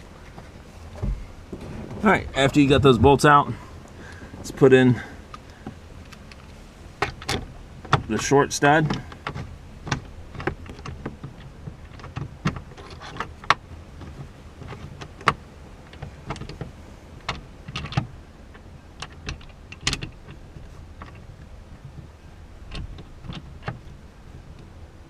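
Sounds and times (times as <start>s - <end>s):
low steady hum: 0.0s - 25.0s
clicks and taps of bolt and handle: 8.9s - 20.4s.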